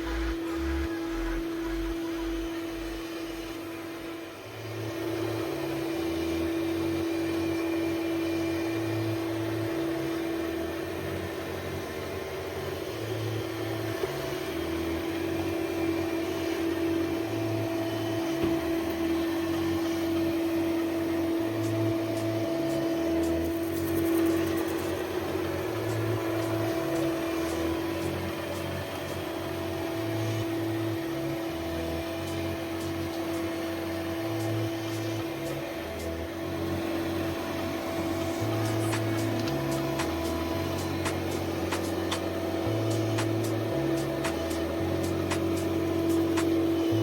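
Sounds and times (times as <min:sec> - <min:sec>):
background music bass line: 0:00.0 - 0:03.5, 0:38.0 - 0:47.0
steady motor hum: 0:00.0 - 0:47.0.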